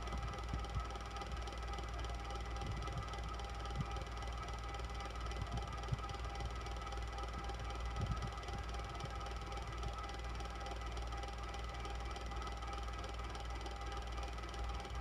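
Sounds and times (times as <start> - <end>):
electric fan running: 0.0 - 15.0.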